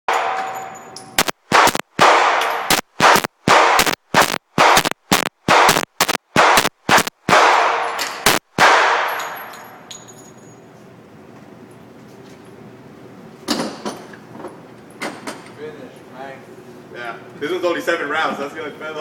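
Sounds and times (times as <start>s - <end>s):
gunshots: 1.2s - 9.4s.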